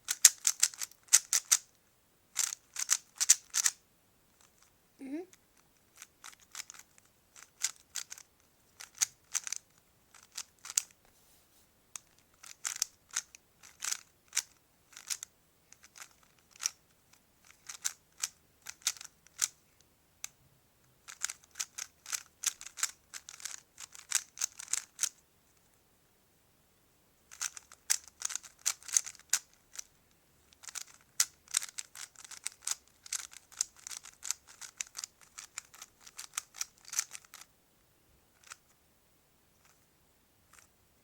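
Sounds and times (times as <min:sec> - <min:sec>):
plastic puzzle cube layers clicking: 0:00.1 - 0:01.7, 0:02.4 - 0:03.8, 0:06.0 - 0:11.0, 0:12.0 - 0:16.8, 0:17.4 - 0:19.6, 0:21.0 - 0:25.2, 0:27.3 - 0:29.9, 0:30.5 - 0:37.5, 0:38.4 - 0:38.6.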